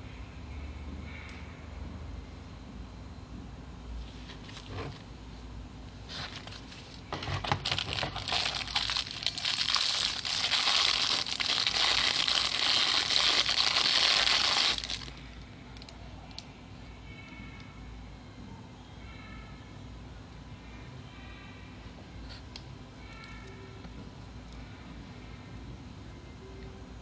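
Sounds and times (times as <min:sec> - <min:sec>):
plastic packaging crinkling: 0:06.1 - 0:15.2.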